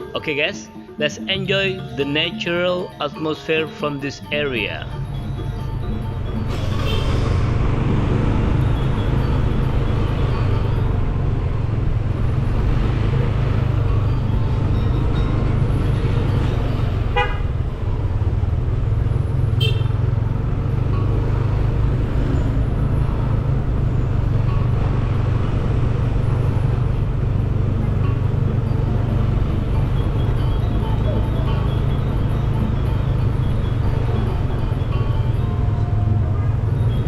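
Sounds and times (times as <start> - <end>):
traffic rumble: 0.0 - 37.0
car horn beep: 17.0 - 17.6, 19.5 - 20.0
higher horn toot: 17.1 - 17.6.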